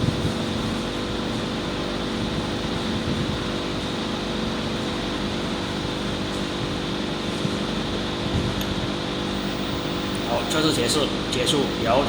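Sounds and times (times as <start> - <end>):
testing machine humming: 8.7 - 12.0.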